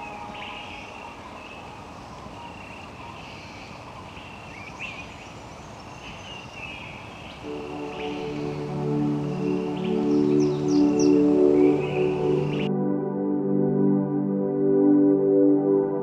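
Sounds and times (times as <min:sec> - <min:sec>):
steady background hiss: 0:00.0 - 0:12.7.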